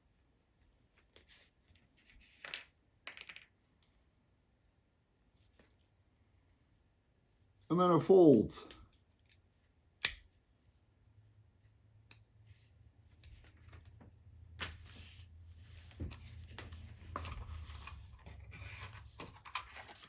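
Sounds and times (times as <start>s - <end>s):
multitool metal clicks: 10.0s - 10.3s.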